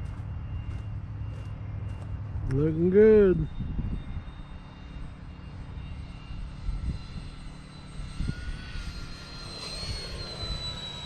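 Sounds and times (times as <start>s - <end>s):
wind rumble on microphone: 0.0s - 10.7s
model plane motor whine: 0.0s - 11.0s.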